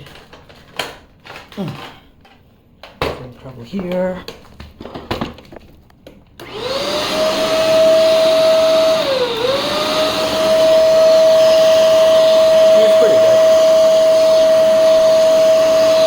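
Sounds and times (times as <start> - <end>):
vacuum cleaner motor whining: 6.4 - 16.0.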